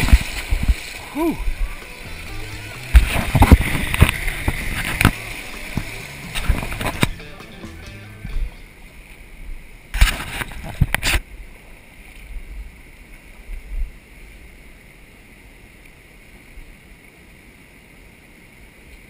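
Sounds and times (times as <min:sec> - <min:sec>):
low rumbling: 0:00.0 - 0:09.9
creek water running: 0:00.0 - 0:18.9.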